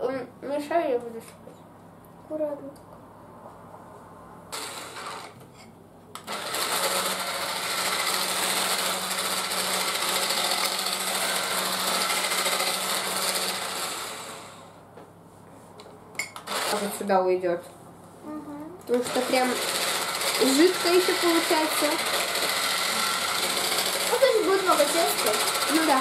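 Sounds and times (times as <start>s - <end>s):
electric hand mixer running: 4.6s - 5.4s, 6.2s - 14.8s, 16.4s - 17.0s, 18.9s - 26.0s.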